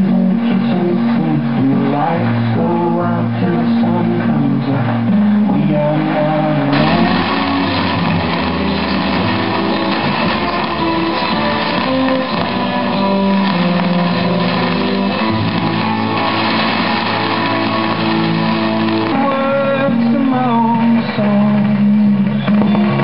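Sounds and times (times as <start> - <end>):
person singing: 0.0 - 7.7, 17.3 - 23.0
guitar music on radio: 0.0 - 23.0
radio static: 5.6 - 20.3.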